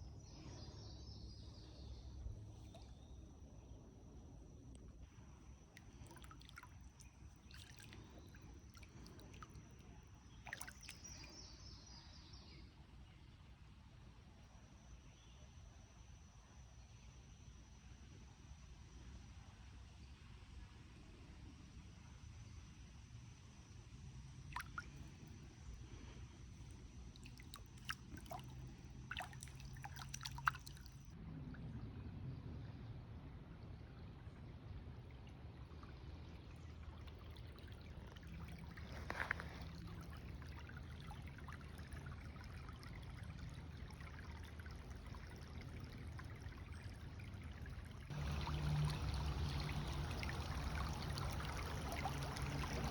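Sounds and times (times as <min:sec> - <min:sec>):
low background rumble: 0:23.6 - 0:52.9
water drops dripping into water: 0:24.5 - 0:25.0, 0:27.2 - 0:31.0, 0:48.0 - 0:52.9
low wind rumble: 0:43.2 - 0:52.9
thin steady high tone: 0:48.1 - 0:52.9.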